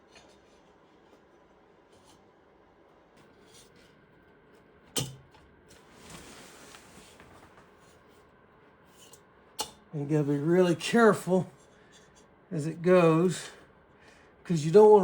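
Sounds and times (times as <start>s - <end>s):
soft rubbing and scraping: 5.7s - 9.2s.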